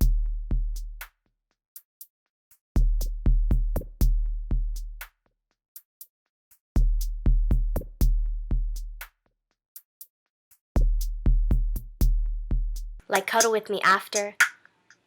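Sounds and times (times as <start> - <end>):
hi-hat ticks: 12.8 - 15.0.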